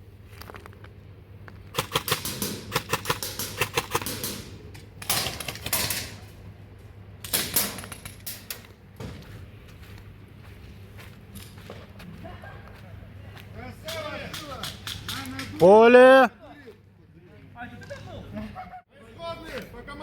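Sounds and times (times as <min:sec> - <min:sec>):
airsoft guns firing: 0:01.7 - 0:06.3, 0:07.3 - 0:08.5.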